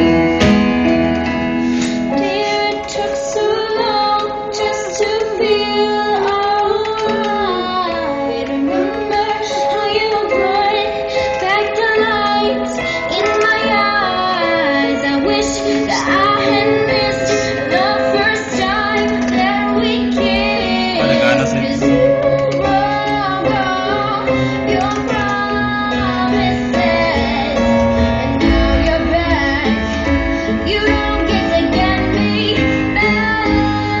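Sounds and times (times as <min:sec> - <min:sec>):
guitar and bass: 0:11.8 - 0:34.0
high-pitched singing voice: 0:14.4 - 0:25.4
held low notes: 0:14.7 - 0:23.7.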